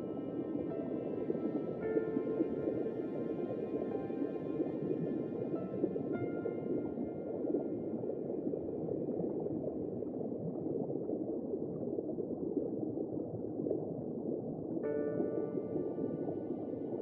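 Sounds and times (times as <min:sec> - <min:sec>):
faint sustained music tones: 0:00.0 - 0:09.7, 0:14.8 - 0:17.0
water bubbling and gurgling: 0:00.0 - 0:17.0.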